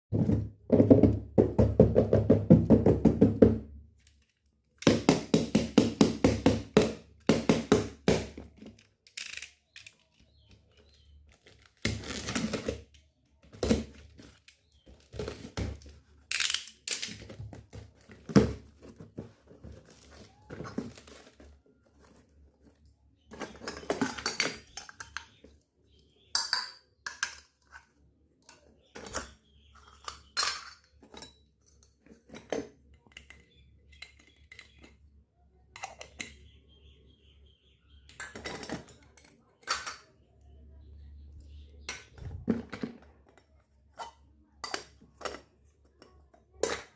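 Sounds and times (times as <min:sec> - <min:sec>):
toy metal pots clinking: 0:23.3 - 0:25.5, 0:26.3 - 0:35.0, 0:38.1 - 0:40.2.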